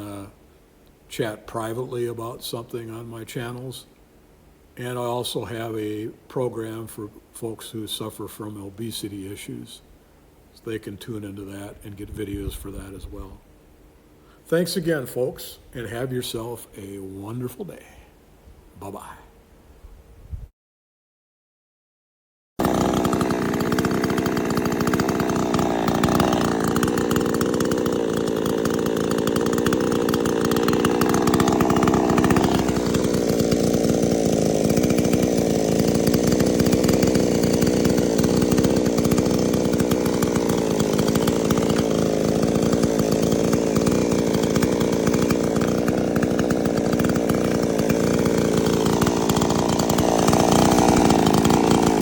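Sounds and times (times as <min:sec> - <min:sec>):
chainsaw running at high revs: 0:22.6 - 0:52.0.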